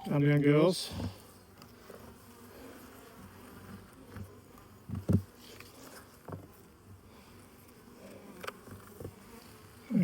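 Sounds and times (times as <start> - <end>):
honeybees buzzing: 0.0 - 10.0
knocks of hive frames and tools: 3.6 - 6.6, 8.2 - 9.5.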